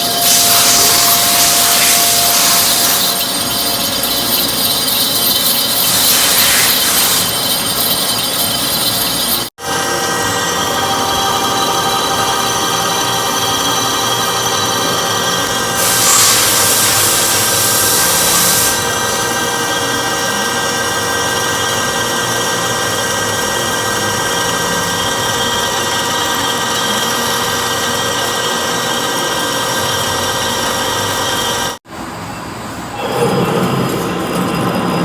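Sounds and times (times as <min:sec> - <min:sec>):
loud hiss: 0:00.0 - 0:09.4, 0:15.4 - 0:19.6
machine tool motor whine: 0:00.0 - 0:31.8.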